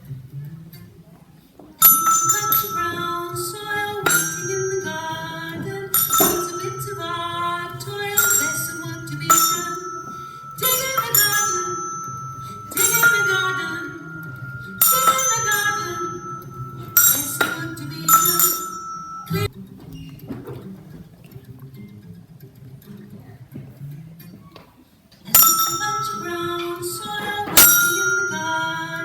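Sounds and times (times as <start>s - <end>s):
metal chime bars ringing: 1.8s - 19.5s, 25.4s - 29.0s.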